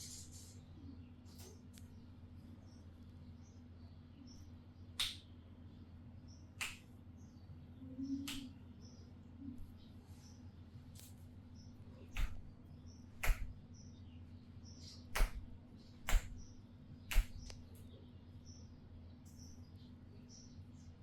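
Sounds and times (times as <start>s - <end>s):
hands slapping during massage: 5.0s - 5.2s, 6.6s - 6.9s, 8.3s - 8.5s, 12.1s - 12.5s, 13.2s - 13.6s, 15.1s - 16.5s, 17.1s - 17.6s.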